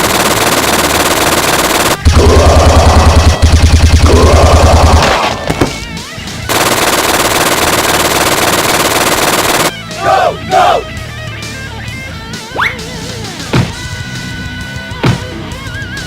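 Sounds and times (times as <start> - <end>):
rapid automatic gunfire: 0.0 - 5.4, 6.5 - 9.7.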